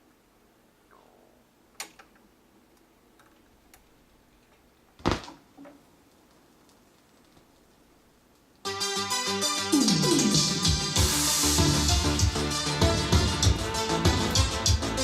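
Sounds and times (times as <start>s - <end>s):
vinyl clicks and crackles: 2.8s - 8.7s
vinyl surface noise: 3.4s - 8.6s
vinyl record pop: 8.6s - 15.0s.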